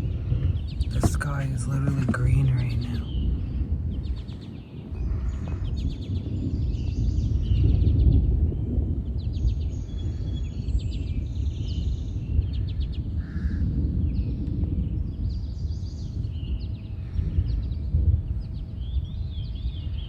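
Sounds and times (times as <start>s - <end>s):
birds chirping and trilling: 0.0s - 8.2s.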